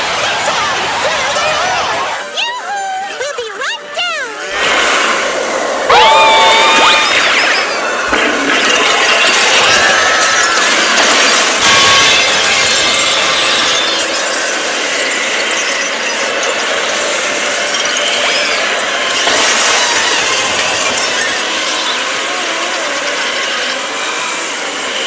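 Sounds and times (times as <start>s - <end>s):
high squeals: 4.4s - 25.0s
mechanical clattering and ratcheting: 8.1s - 22.3s.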